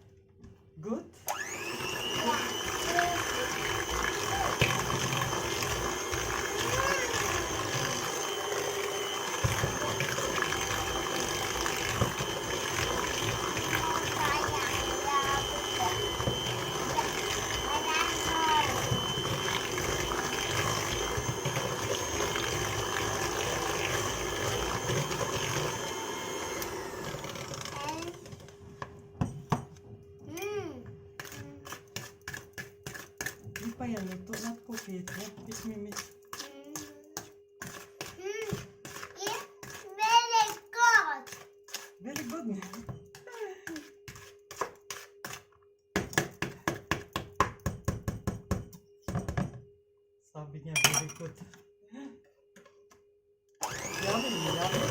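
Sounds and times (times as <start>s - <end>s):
electric hand mixer running: 1.3s - 29.0s, 37.7s - 43.9s, 53.6s - 54.9s.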